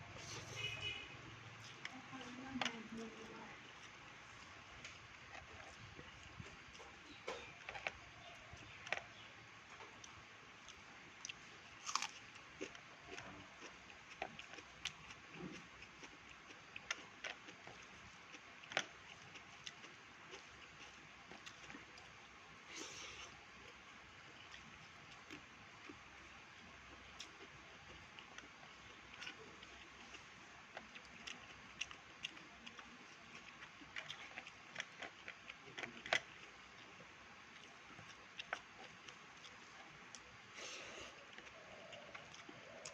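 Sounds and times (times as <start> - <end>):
person chewing food: 0.1 - 42.9.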